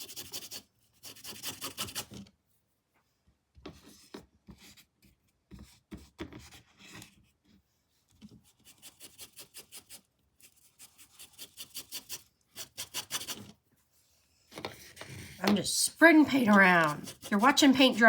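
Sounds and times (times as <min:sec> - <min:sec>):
paintbrush scrubbing canvas: 0:08.4 - 0:18.0.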